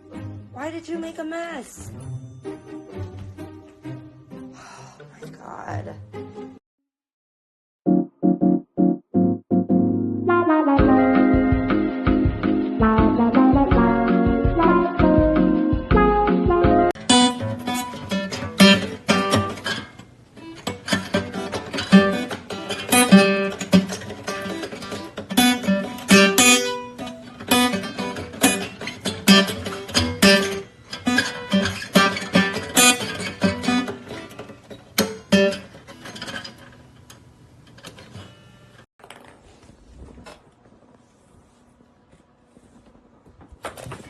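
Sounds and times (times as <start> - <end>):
strummed guitar chords: 7.9 - 36.3.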